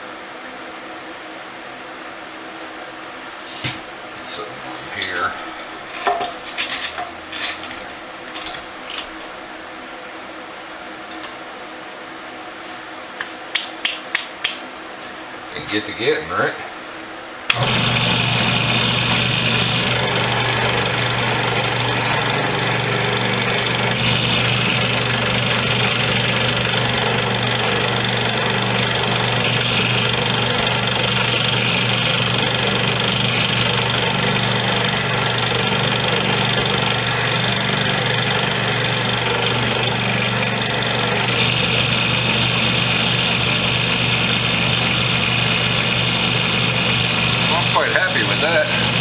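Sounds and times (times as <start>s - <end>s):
wire wheel motor hum: 17.5s - 49.0s
wire wheel scratching metal: 17.6s - 41.7s.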